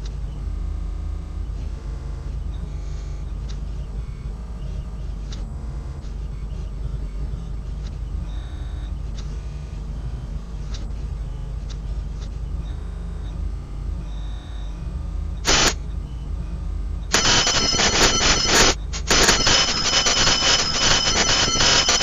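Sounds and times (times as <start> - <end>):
doorbell buzzing: 15.5 - 15.8, 17.1 - 22.0.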